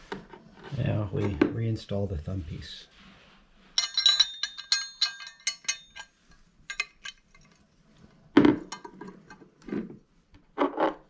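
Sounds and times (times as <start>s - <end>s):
small metal parts clinking: 3.8s - 7.7s.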